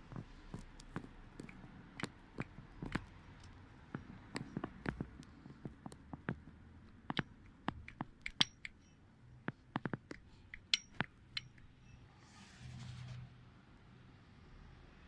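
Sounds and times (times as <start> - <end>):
metal parts clicking and clinking: 7.9 - 9.0, 10.1 - 12.0.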